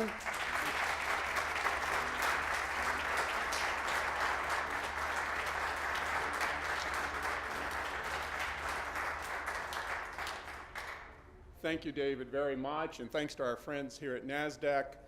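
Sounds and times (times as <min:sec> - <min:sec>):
audience applauding: 0:00.0 - 0:11.2.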